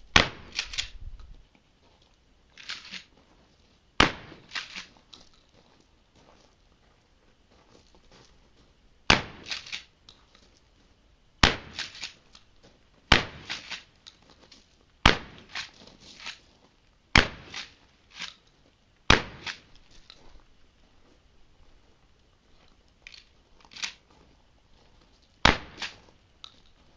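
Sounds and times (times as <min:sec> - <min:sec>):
shotgun shots: 0:00.1 - 0:00.9, 0:04.0 - 0:04.9, 0:09.1 - 0:09.9, 0:11.4 - 0:12.2, 0:13.1 - 0:13.9, 0:15.0 - 0:15.7, 0:17.1 - 0:17.8, 0:19.1 - 0:19.7, 0:25.4 - 0:26.0
shotgun pump clacks: 0:09.4 - 0:09.9, 0:11.7 - 0:12.5.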